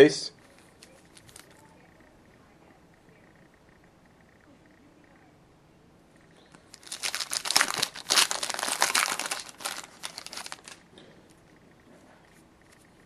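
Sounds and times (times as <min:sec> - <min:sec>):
wrapper being torn and crinkled: 0:00.8 - 0:01.6, 0:06.6 - 0:10.8.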